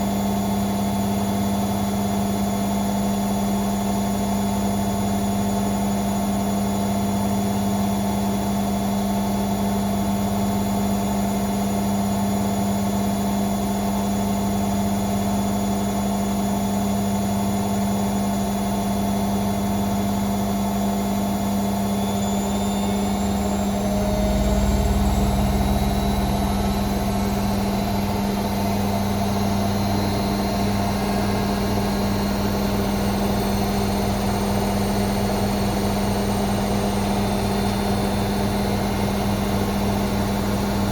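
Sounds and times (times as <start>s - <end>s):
washing machine spinning: 0.0s - 40.9s
low vibration rumble: 21.8s - 35.4s.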